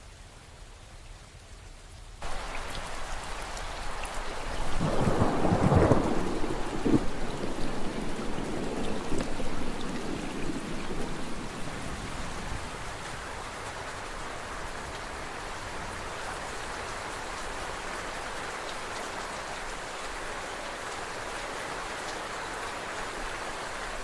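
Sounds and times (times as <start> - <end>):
steady rain: 0.0 - 24.0
thunder rumbling: 2.2 - 13.1.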